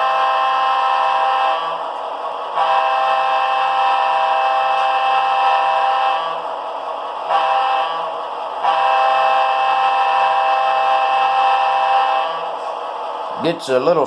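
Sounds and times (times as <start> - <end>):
air horn through small speaker: 0.0 - 1.8, 2.6 - 6.4, 7.3 - 12.6.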